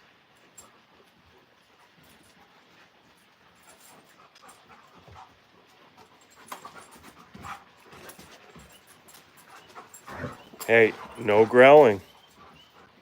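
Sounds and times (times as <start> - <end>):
dog panting: 0.4 - 13.0.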